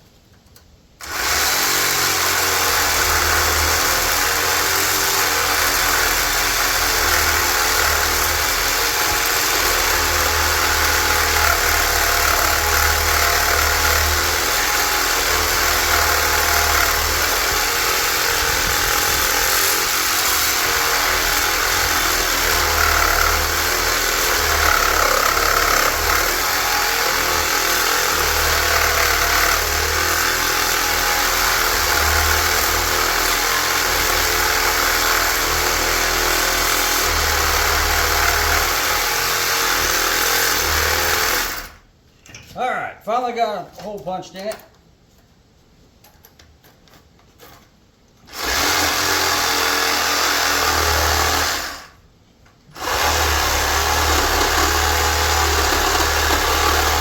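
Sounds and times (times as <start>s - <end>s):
reciprocating saw cutting metal: 1.0s - 41.8s, 52.8s - 57.0s.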